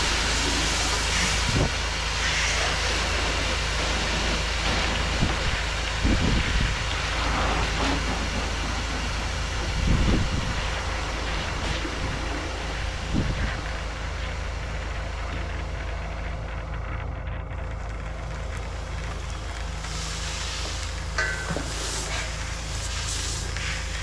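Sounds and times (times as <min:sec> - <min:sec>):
pressure washer spray hiss: 0:00.0 - 0:13.2, 0:19.9 - 0:24.0
engine-driven equipment running: 0:00.0 - 0:24.0.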